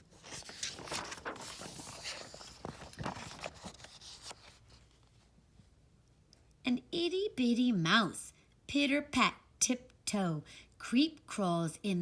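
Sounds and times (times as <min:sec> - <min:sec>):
paper pages rustling: 0:00.0 - 0:05.1.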